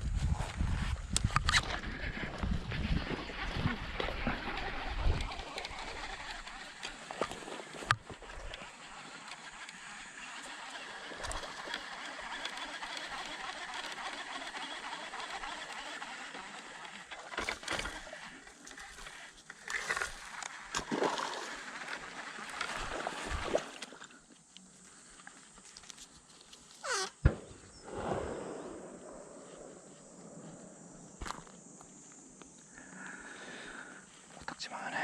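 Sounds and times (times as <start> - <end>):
water splashing: 20.7 - 24.1
water rushing hiss: 27.8 - 30.5.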